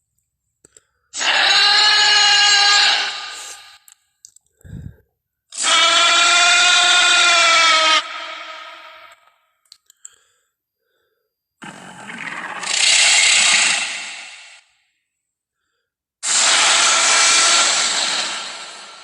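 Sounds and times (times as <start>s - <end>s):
faint clicks: 9.1s - 10.2s
creature breathy hisses: 16.2s - 19.0s.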